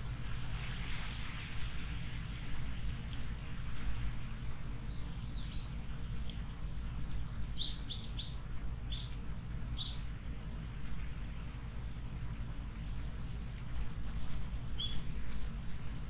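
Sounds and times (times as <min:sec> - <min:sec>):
low background rumble: 0:00.0 - 0:16.0
small bird chirping: 0:04.9 - 0:05.7, 0:07.6 - 0:09.2, 0:09.8 - 0:10.0, 0:14.8 - 0:15.0.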